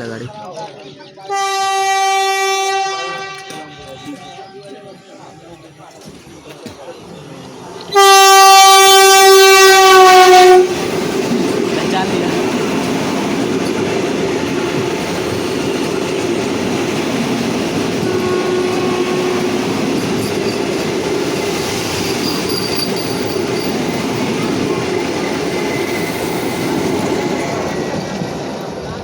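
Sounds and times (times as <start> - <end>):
train wheels rumbling on rail: 5.5 - 29.0
faint wheel squeals: 21.7 - 23.8.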